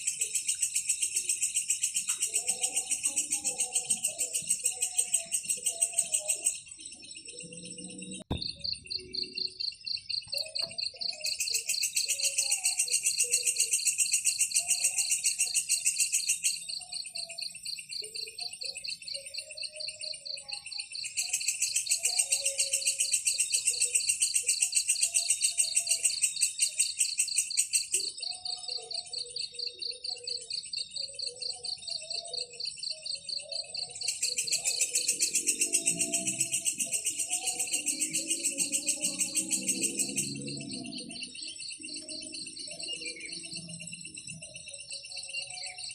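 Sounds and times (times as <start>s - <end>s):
rapidly pulsing high chirp: 0.0s - 45.9s
faster pulsing insect chorus: 31.7s - 45.9s.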